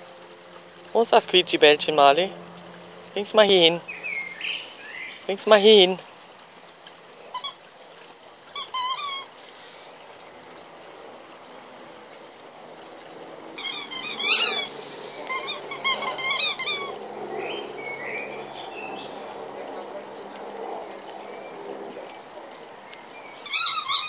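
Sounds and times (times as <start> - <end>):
squeaky toy squeaking: 7.4 - 7.6, 8.6 - 9.3, 13.6 - 17.0, 23.4 - 24.0.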